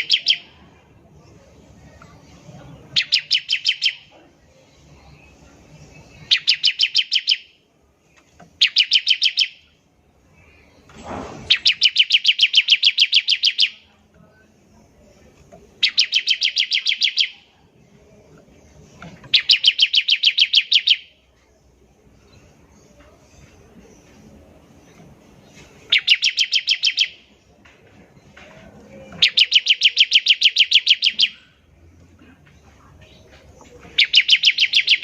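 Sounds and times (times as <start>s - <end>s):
bird singing rapid trills: 0.0s - 0.6s, 2.1s - 4.1s, 5.0s - 7.6s, 8.6s - 9.8s, 11.5s - 14.0s, 15.8s - 17.5s, 19.1s - 21.2s, 25.9s - 27.3s, 29.2s - 31.7s, 33.8s - 35.0s.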